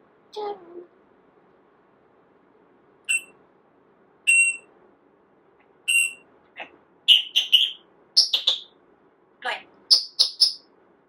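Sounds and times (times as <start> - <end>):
parrot imitating alarm beeps: 3.1 - 3.3, 4.3 - 4.6, 5.9 - 6.2, 7.1 - 7.8
parrot whistled chirps: 3.1 - 3.3, 4.3 - 4.6, 5.9 - 6.2, 7.1 - 8.7, 9.9 - 10.6.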